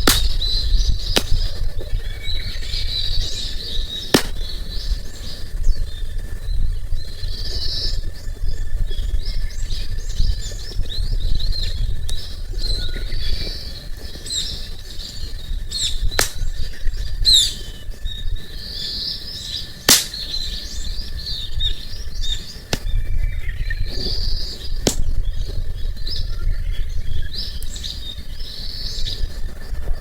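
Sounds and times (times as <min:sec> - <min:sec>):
campfire crackling pops: 0:00.0 - 0:02.0, 0:04.0 - 0:04.9, 0:16.1 - 0:16.8, 0:19.9 - 0:20.6, 0:22.6 - 0:23.0, 0:24.8 - 0:25.4
small birds chirping: 0:00.0 - 0:29.9.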